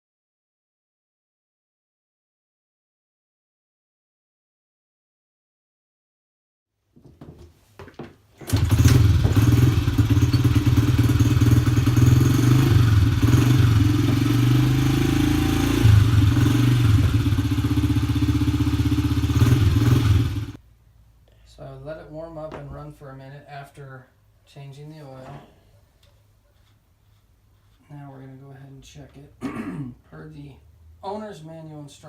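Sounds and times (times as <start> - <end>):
engine clunks: 8.4 - 15.0
small motorcycle engine idling: 8.4 - 20.6.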